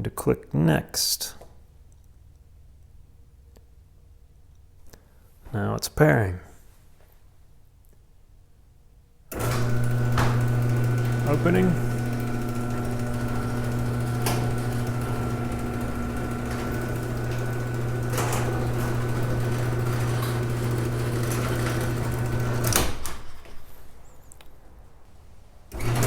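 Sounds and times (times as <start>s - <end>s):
motor stopping click: 9.3s - 22.8s
garage door opener motor running: 9.3s - 23.4s, 25.7s - 26.0s.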